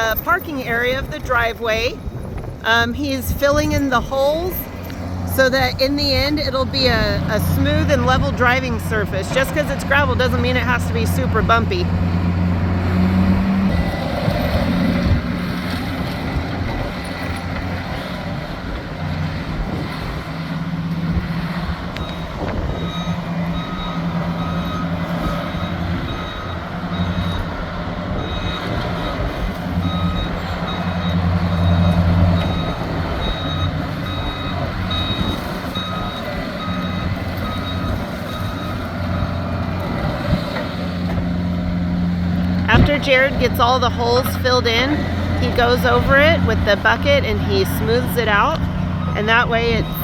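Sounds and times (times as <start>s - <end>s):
backup alarm beeping: 0.0s - 12.0s, 21.9s - 40.3s, 42.7s - 50.0s
loader engine running: 0.0s - 50.0s.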